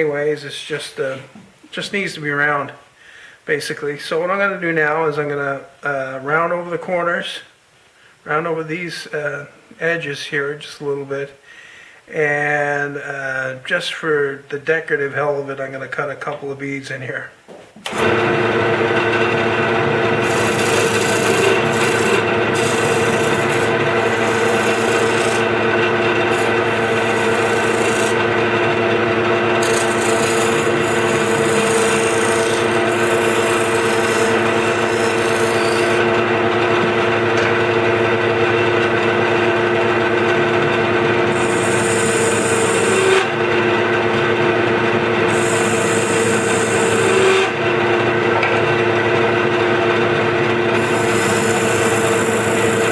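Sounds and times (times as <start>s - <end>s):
chisel scraping spinning wood: 17.9s - 49.2s, 49.8s - 52.9s
wood lathe humming: 17.9s - 52.9s.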